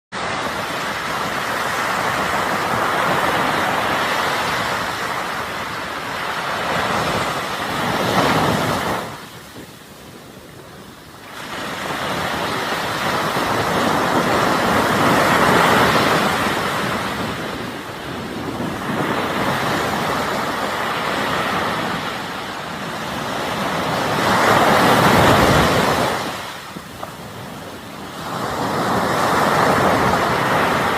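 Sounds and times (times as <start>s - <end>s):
ocean waves breaking on shore: 0.2s - 30.9s.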